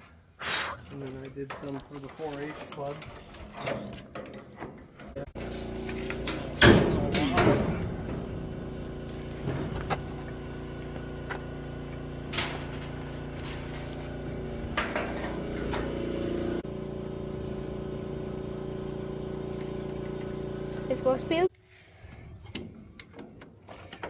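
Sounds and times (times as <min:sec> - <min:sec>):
engine running steadily: 0:04.8 - 0:24.0.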